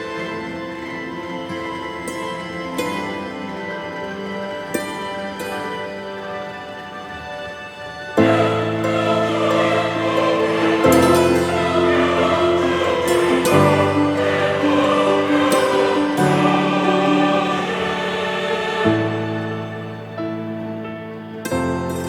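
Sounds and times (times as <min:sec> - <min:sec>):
sustained musical accompaniment: 0:00.0 - 0:22.0
choir singing held notes: 0:08.2 - 0:20.8.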